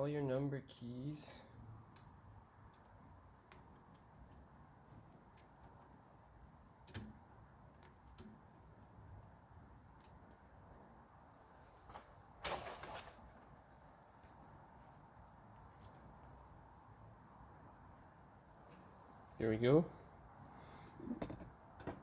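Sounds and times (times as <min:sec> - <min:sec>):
scraping rustle: 0:11.5 - 0:15.0.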